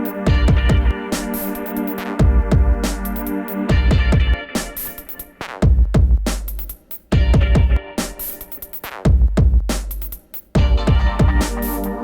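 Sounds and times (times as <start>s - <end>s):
electronic music: 0.0s - 5.7s, 10.6s - 12.0s
drum-machine beat: 0.0s - 12.0s.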